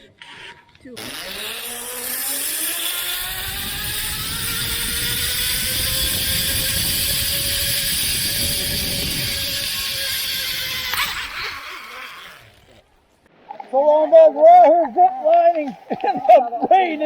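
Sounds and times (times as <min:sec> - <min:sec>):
zip-line pulleys whining on cable: 0:00.0 - 0:12.9
wind on microphone: 0:03.1 - 0:11.6.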